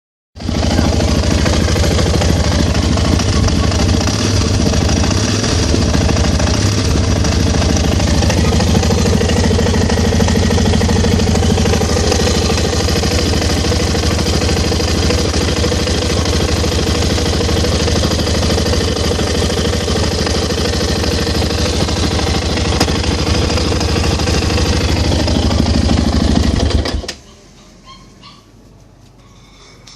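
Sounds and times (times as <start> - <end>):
motorcycle engine knocking: 0.4 - 27.2.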